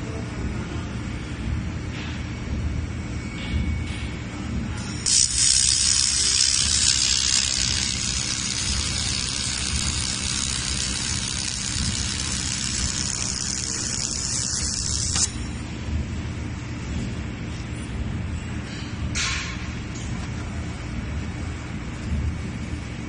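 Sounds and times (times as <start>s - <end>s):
machine low hum: 0.0s - 23.0s
laser welder hiss: 5.0s - 15.6s.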